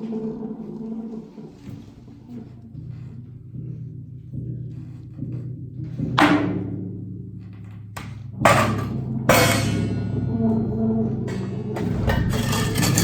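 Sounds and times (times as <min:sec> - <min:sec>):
steady low tone: 0:00.0 - 0:13.0
ringing percussion hits: 0:08.4 - 0:13.0.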